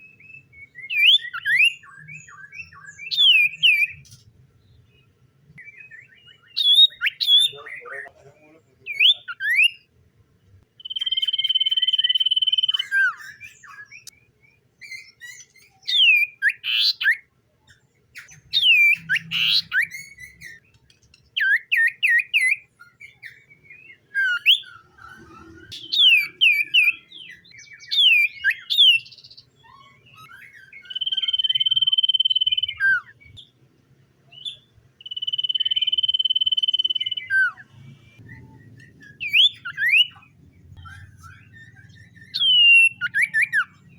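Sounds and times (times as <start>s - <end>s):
bird whistles: 0.0s - 4.1s, 5.6s - 7.7s, 10.8s - 14.2s, 14.8s - 17.2s, 18.2s - 20.6s, 21.4s - 33.4s, 34.3s - 43.9s
bird downward-sweeping chirps: 23.1s - 33.4s, 34.3s - 43.9s.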